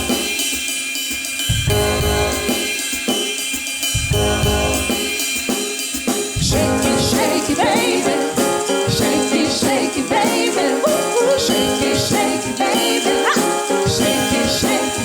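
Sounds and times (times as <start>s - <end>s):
drum kit beat: 0.0s - 15.0s
band playing: 1.7s - 2.7s, 4.1s - 5.1s, 6.5s - 15.0s
person singing: 6.5s - 15.0s.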